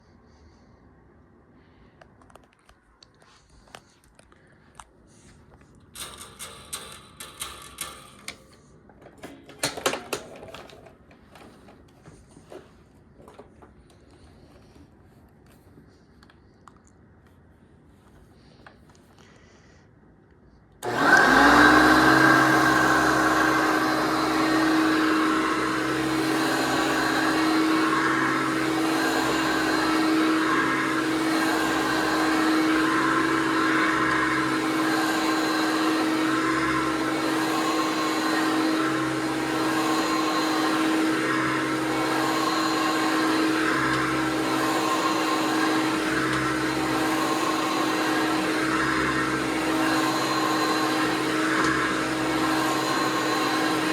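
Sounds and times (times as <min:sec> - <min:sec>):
vacuum cleaner motor running: 0:20.8 - 0:53.9.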